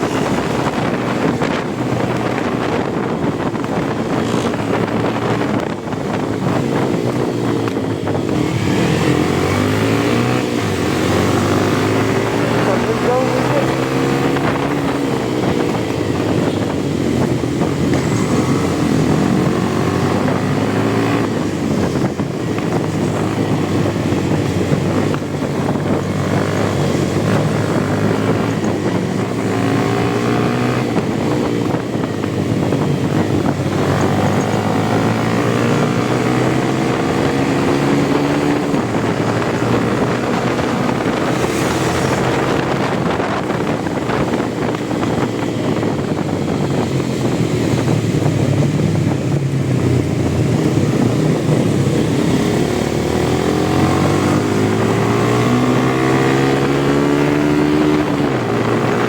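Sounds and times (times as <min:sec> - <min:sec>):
motorcycle engine accelerating: 0:00.0 - 0:59.0
wind noise on microphone: 0:00.0 - 0:59.0.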